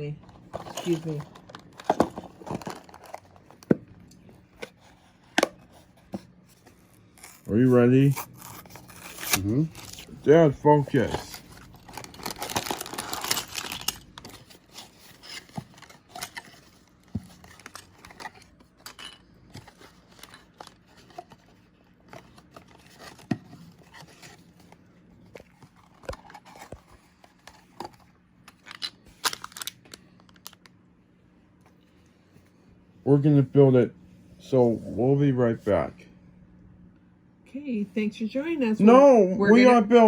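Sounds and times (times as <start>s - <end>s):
packaging clicks and rustles: 0.3s - 5.9s, 8.1s - 30.8s
cardboard box tearing: 8.2s - 16.5s.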